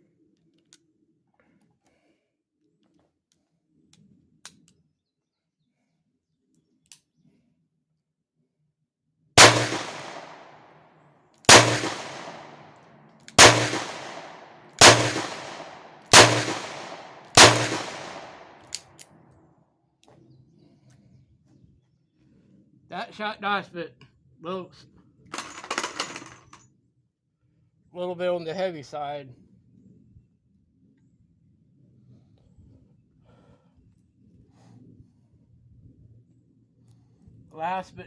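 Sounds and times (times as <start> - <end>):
revolver shots: 9.4 - 10.4, 11.5 - 12.6.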